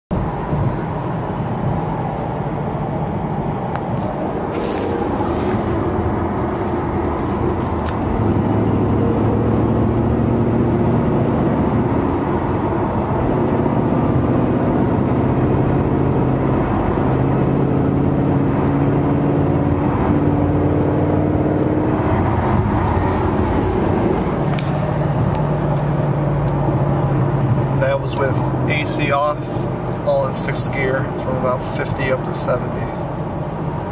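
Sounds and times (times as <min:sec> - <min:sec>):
car exhaust drone: 0:00.1 - 0:33.9.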